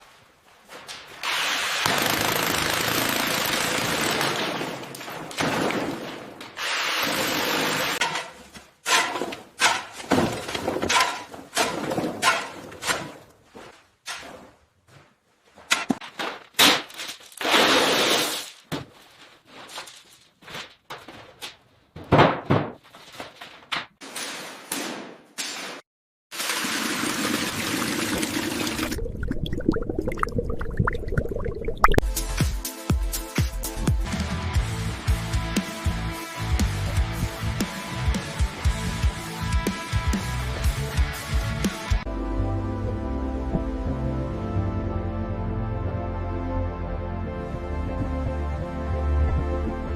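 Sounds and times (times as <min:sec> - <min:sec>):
power tool running: 0:01.8 - 0:04.3, 0:06.6 - 0:08.0
concrete breaking impacts: 0:01.9 - 0:12.7.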